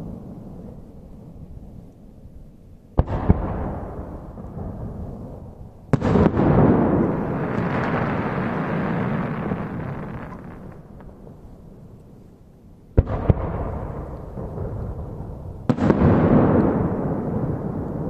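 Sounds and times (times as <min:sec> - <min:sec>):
rolling echo of bangs: 0:06.0 - 0:09.5, 0:13.0 - 0:17.7.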